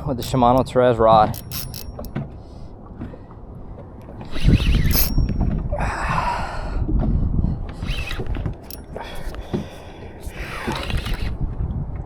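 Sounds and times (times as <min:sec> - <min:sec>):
rumble and knocks from rod handling: 0:00.0 - 0:05.8, 0:06.9 - 0:12.0
fishing reel being cranked: 0:01.4 - 0:02.1, 0:04.0 - 0:05.5, 0:07.7 - 0:09.5, 0:10.2 - 0:11.4.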